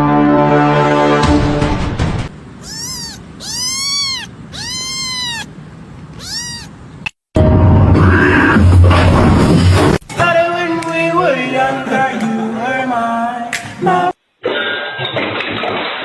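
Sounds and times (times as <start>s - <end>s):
cat meowing: 2.6s - 7.0s.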